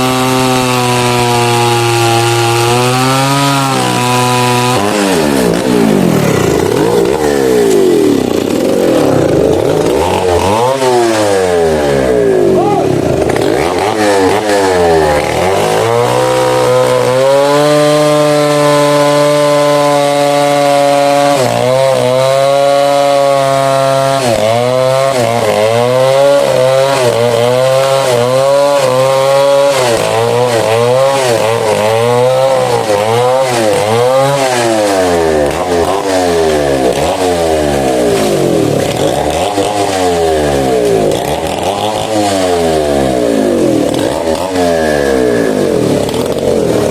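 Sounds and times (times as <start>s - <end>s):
chainsaw cutting through tree: 0.0s - 46.9s.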